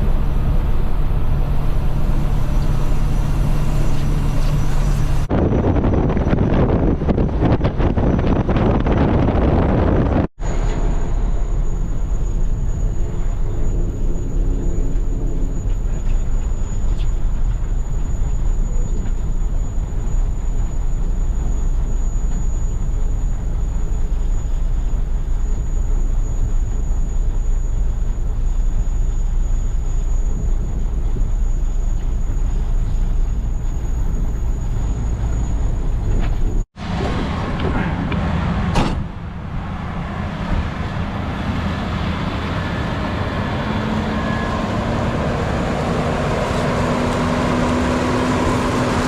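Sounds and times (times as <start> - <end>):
faint high whine: 0.0 - 7.4, 10.4 - 38.4
combine harvester deep rumble: 0.0 - 49.0.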